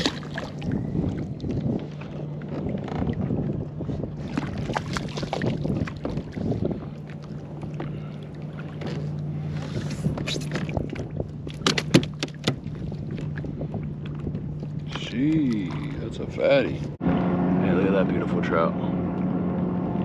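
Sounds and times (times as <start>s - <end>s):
knocks and clatter on kayak: 0.0s - 8.0s, 8.7s - 16.0s.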